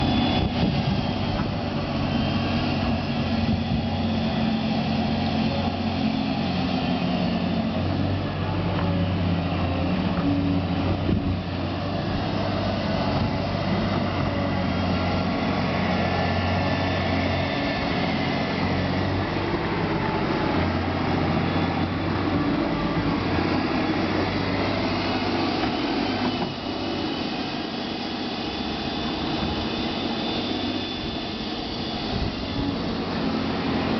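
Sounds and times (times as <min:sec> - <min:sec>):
excavator diesel engine running: 0:00.0 - 0:33.9.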